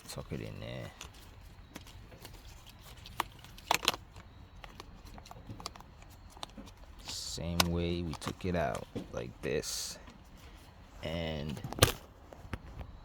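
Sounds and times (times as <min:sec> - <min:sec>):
light rustling: 0:00.0 - 0:13.0
sharp plastic clicks: 0:00.9 - 0:09.2, 0:11.4 - 0:13.0.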